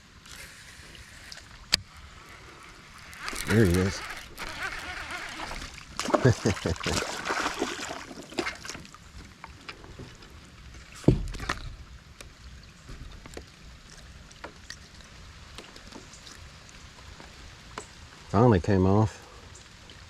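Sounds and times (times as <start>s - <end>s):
water splashing: 0.3s - 11.8s.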